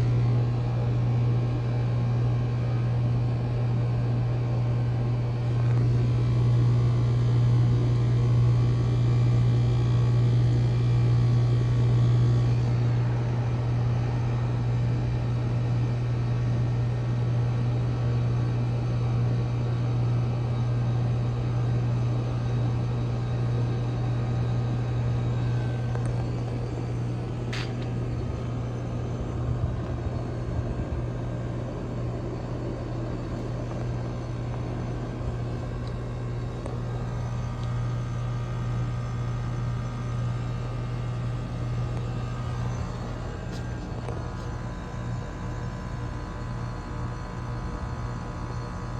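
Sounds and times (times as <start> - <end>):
low compressor hum: 0.0 - 16.4, 21.3 - 48.9.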